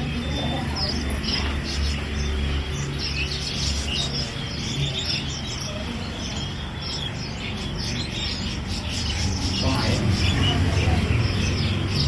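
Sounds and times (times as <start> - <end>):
caged songbirds chirping: 0.0 - 12.0.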